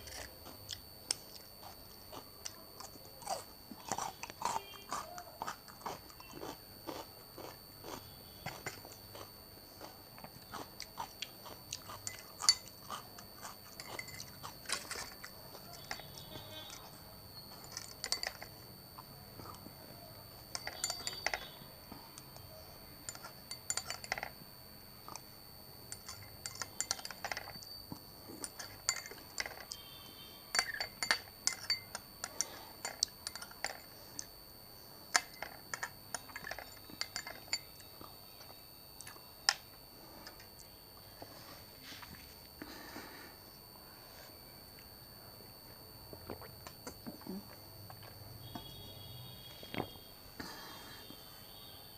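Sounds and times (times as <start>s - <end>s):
faint high-pitched whine: 0.0s - 51.9s
cutlery clinking against a dish: 17.6s - 18.5s, 20.5s - 21.6s, 23.1s - 24.4s, 26.0s - 27.7s, 28.4s - 29.8s, 30.5s - 33.9s, 35.2s - 37.6s.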